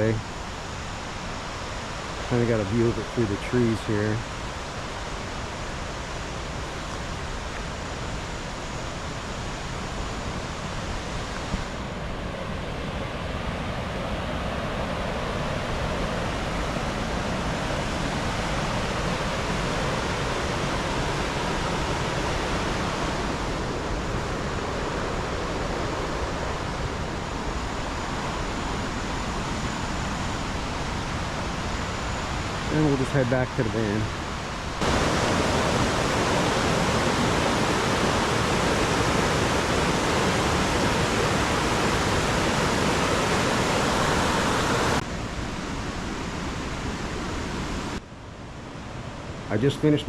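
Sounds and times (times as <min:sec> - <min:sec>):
river rapids rushing: 0:34.8 - 0:45.0.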